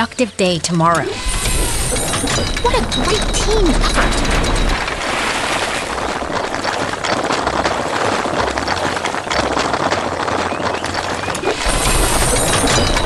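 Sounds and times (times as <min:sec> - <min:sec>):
machinery clattering and rattling: 0:00.9 - 0:13.0
low rumble: 0:01.1 - 0:08.0.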